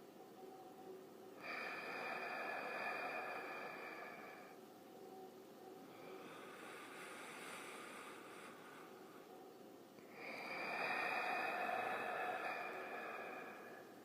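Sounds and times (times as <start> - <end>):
creepy breathing: 1.4 - 4.6, 5.9 - 9.5, 10.1 - 14.0.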